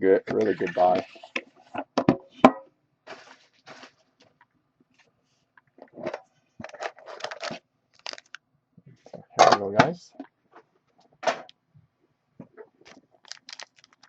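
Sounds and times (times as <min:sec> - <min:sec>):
cardboard packaging crackling: 0:07.2 - 0:08.4, 0:13.2 - 0:14.0
cardboard packaging clicks: 0:07.3 - 0:08.4, 0:13.2 - 0:14.0.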